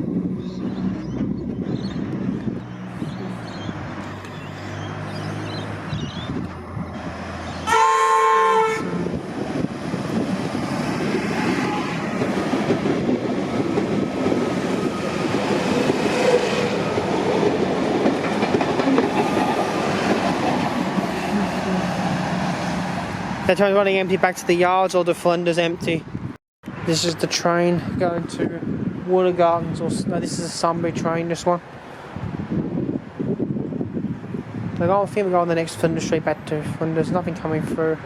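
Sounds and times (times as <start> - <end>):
train horn: 7.6 - 9.0
train wheels on rails: 9.2 - 23.5.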